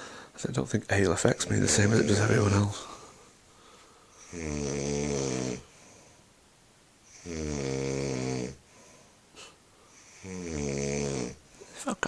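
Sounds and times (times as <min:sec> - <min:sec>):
quiet breathing: 0:00.0 - 0:00.5, 0:01.3 - 0:04.6, 0:05.2 - 0:06.4, 0:08.5 - 0:10.5, 0:11.2 - 0:12.0
man snoring loudly: 0:04.2 - 0:05.7, 0:07.1 - 0:08.6, 0:10.1 - 0:11.4.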